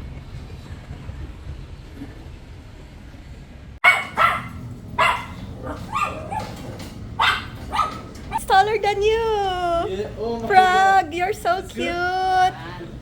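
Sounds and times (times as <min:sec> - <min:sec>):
dog barking: 0:03.8 - 0:08.4.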